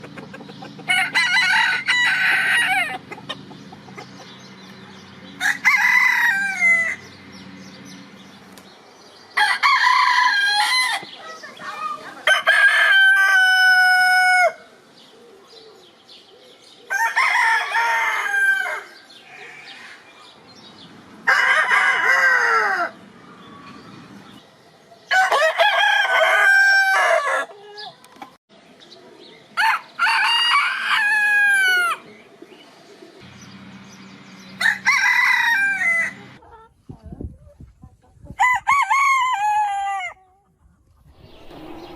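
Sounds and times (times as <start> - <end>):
rooster crowing: 0.8 - 3.0, 5.4 - 7.1, 9.4 - 11.1, 12.2 - 14.7, 16.9 - 20.0, 21.2 - 23.0, 25.1 - 27.5, 29.6 - 32.0, 34.6 - 36.4, 38.4 - 40.2.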